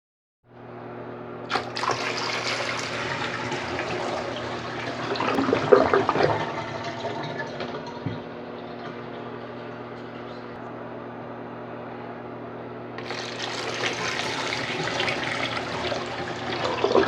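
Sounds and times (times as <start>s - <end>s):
toilet water rushing: 1.5s - 10.6s, 13.0s - 17.0s.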